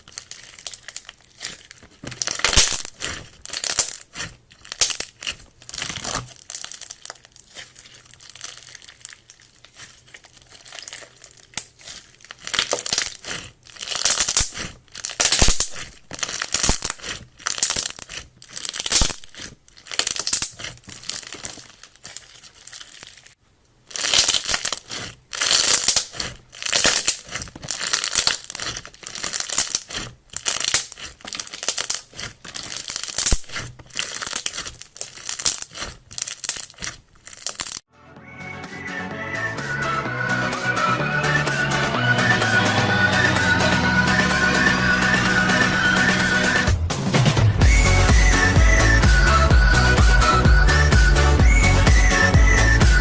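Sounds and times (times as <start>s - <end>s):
slime squelching and crackling: 0.0s - 37.9s.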